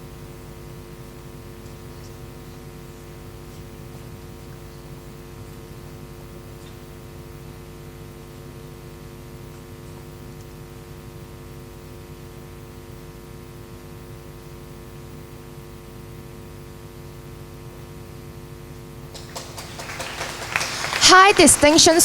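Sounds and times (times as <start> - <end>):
electrical mains hum: 0.0 - 22.0.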